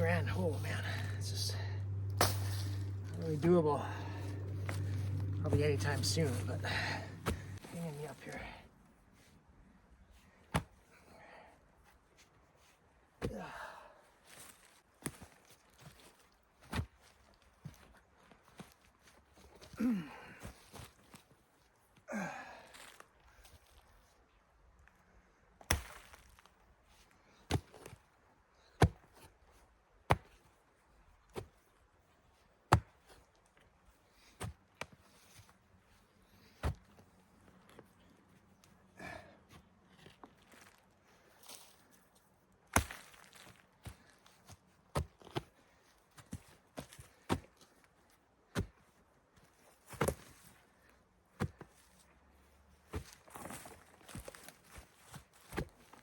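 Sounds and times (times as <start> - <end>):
digging tool striking soil: 0.1 - 7.7, 42.7 - 43.4
digging tool chopping into soil: 2.0 - 3.3, 42.7 - 44.0.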